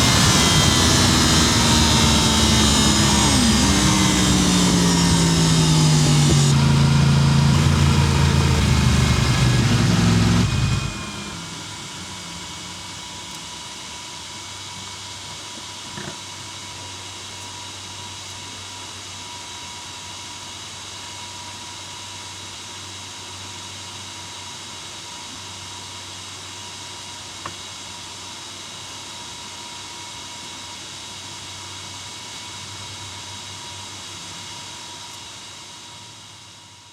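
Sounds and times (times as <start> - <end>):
motorcycle engine winding down: 0.0 - 13.5.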